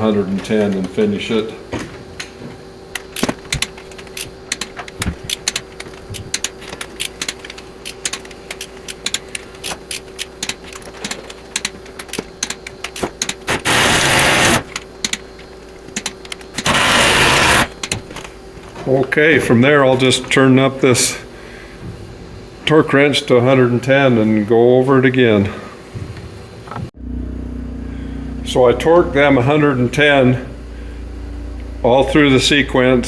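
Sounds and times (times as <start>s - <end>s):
faint steady hum: 0.0s - 33.0s
torque wrench ratcheting clicks: 3.0s - 15.2s.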